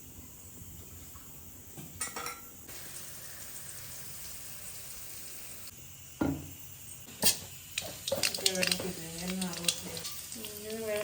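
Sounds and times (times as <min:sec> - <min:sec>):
oil sizzling in a pan: 0:02.0 - 0:11.0.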